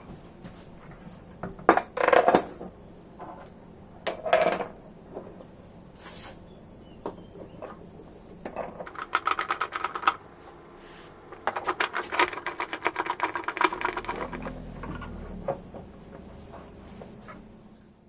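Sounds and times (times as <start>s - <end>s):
rapid clicking of hand tools: 11.4s - 14.6s.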